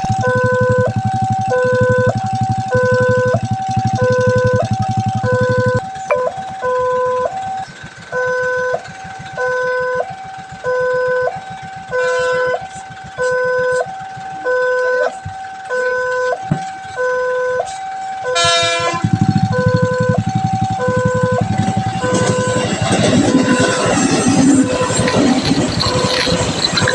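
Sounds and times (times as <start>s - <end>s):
two-tone crossing alarm: 0.0s - 26.9s
loud low rumble: 19.0s - 26.9s.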